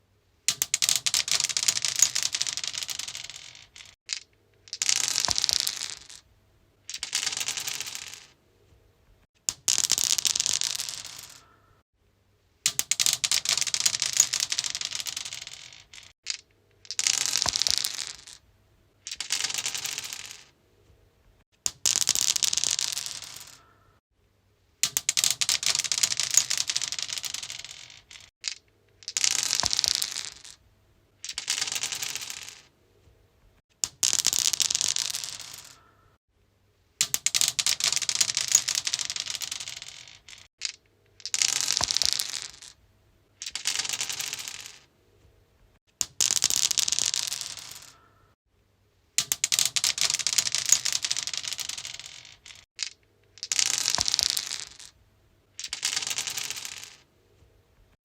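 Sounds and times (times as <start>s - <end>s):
dice rolling on stone: 0.5s - 6.2s, 6.9s - 8.4s, 9.5s - 11.5s, 12.7s - 18.4s, 19.0s - 20.6s, 21.6s - 23.7s, 24.8s - 30.6s, 31.2s - 32.7s, 33.8s - 35.9s, 37.0s - 42.8s, 43.4s - 44.9s, 46.0s - 48.1s, 49.2s - 55.0s, 55.6s - 57.1s.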